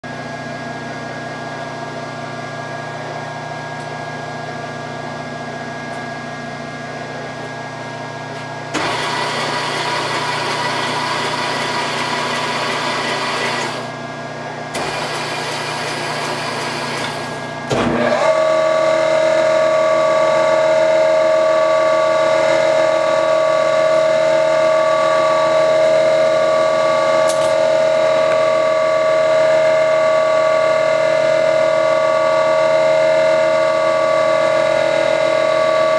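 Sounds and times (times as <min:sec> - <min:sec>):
loud motor whine: 0:00.1 - 0:35.9
electric motor hum: 0:08.7 - 0:14.1, 0:14.7 - 0:30.6
noisy motor running: 0:08.7 - 0:35.9.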